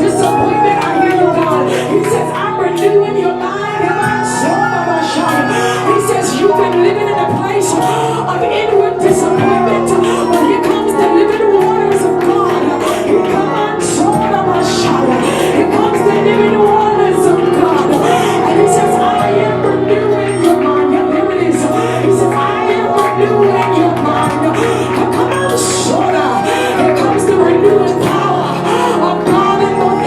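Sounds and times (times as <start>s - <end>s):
keyboard chords: 0.0s - 30.0s
voices singing: 0.0s - 30.0s.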